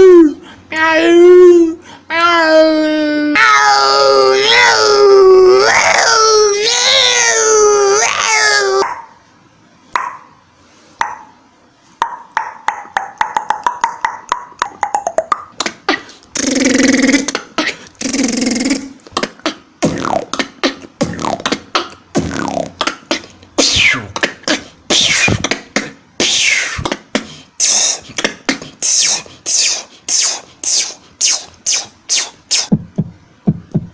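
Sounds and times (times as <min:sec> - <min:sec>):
person beatboxing: 0:12.3 - 0:33.9.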